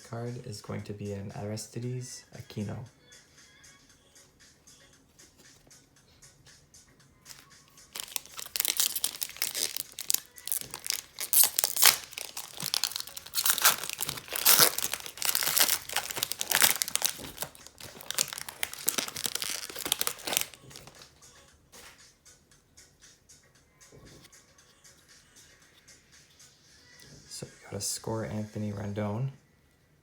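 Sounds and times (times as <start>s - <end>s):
plastic wrapper crinkling and tearing: 7.3s - 21.1s.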